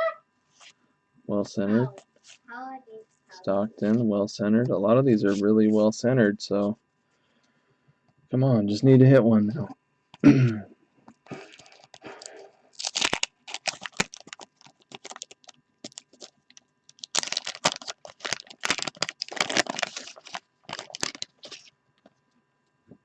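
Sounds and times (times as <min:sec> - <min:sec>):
wax paper wrappers crinkling: 0:11.3 - 0:22.2.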